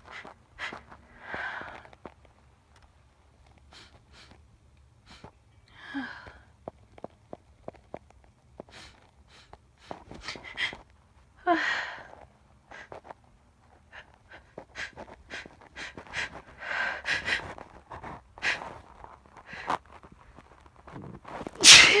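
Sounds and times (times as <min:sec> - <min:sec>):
woman gasping and sniffing: 0:08.7 - 0:10.8, 0:13.9 - 0:17.6.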